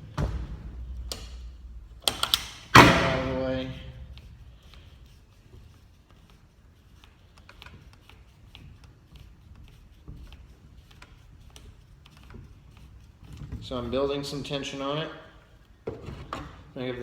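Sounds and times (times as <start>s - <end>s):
hydraulic jack clicking: 2.0s - 3.2s.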